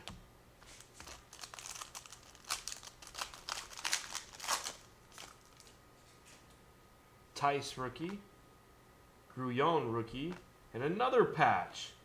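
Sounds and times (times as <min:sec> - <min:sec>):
plastic packaging crinkling: 0:00.6 - 0:05.8.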